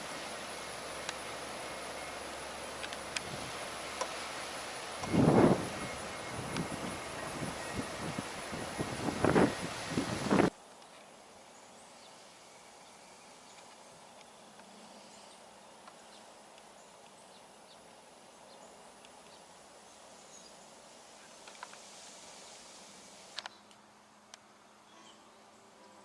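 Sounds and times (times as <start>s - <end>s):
low steady hiss: 0.0s - 26.0s
small chirps and ticks: 0.1s - 9.8s, 10.8s - 21.9s.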